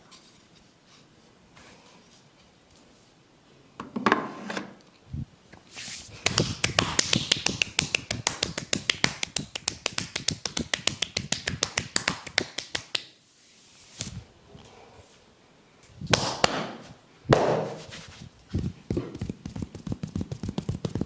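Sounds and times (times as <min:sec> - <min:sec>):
hands slapping body rapidly: 0:06.2 - 0:13.2, 0:16.1 - 0:18.0, 0:18.6 - 0:21.0.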